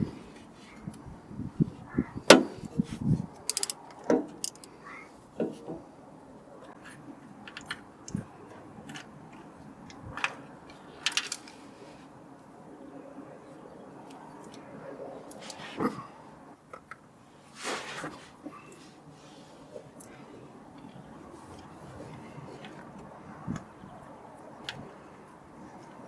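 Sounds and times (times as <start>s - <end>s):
tools knocking and clicking: 3.4s - 4.7s, 7.4s - 8.2s.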